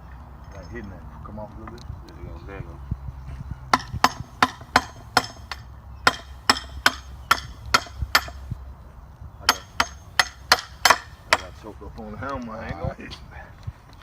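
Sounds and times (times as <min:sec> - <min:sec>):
hammer striking steel bolt: 0:03.8 - 0:08.4, 0:09.5 - 0:11.6.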